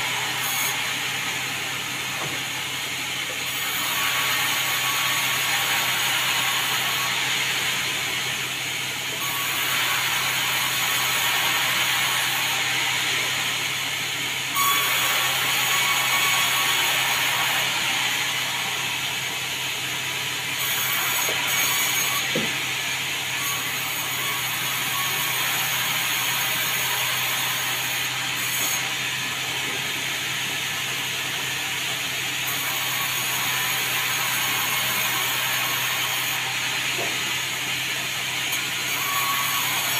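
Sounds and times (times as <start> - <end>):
saw blade cutting log: 0.0 - 39.9.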